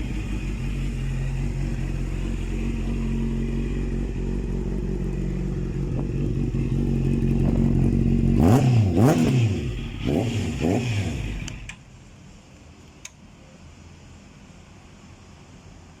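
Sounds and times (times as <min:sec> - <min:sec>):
motorcycle engine idling and revving: 0:00.0 - 0:14.2.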